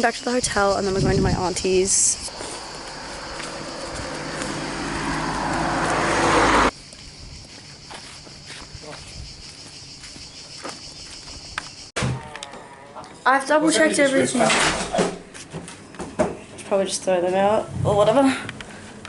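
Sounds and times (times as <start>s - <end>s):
insects buzzing: 0.0s - 11.9s
vehicle approaching: 2.0s - 7.1s.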